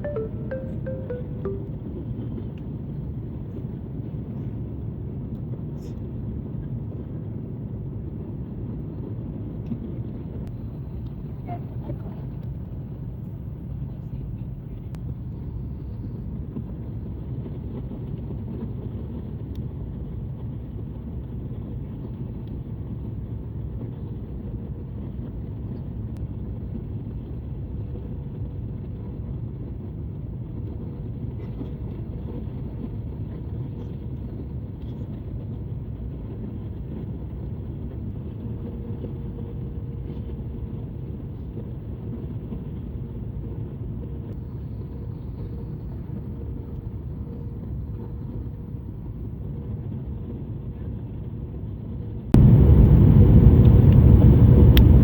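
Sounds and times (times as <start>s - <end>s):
faint steady hum: 0.0s - 2.2s
airliner engines rumbling in cabin: 3.2s - 55.0s.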